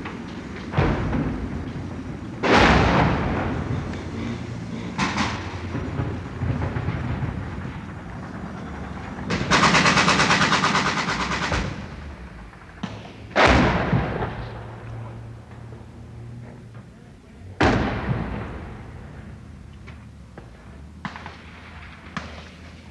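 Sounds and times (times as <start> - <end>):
crowd din: 0.0 - 9.4
loud gunshot: 12.8 - 14.8
sharp crack: 17.6 - 22.9.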